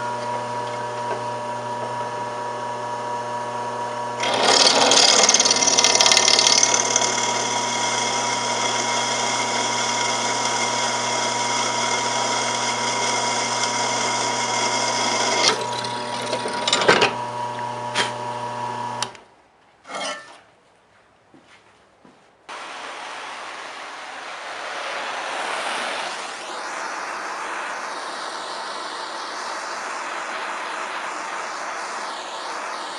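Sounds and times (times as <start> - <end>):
power tool motor running: 0.0 - 19.2.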